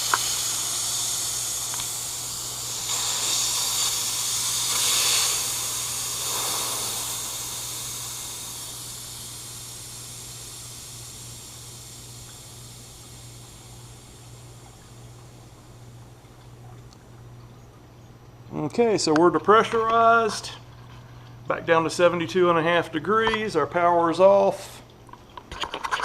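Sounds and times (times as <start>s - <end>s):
high-pressure air hissing: 0.0s - 14.9s.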